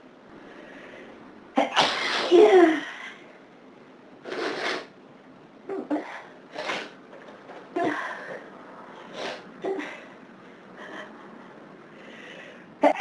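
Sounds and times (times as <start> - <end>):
person sneezing: 1.6 - 2.9
catching breaths: 7.8 - 12.8.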